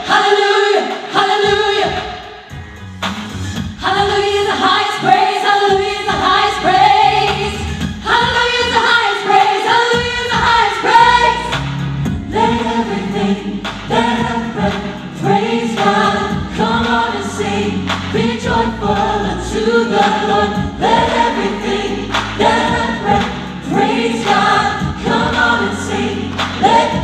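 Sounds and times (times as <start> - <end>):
gospel choir singing: 0.0 - 2.5, 3.8 - 27.0
bass line: 6.1 - 8.8, 10.0 - 27.0.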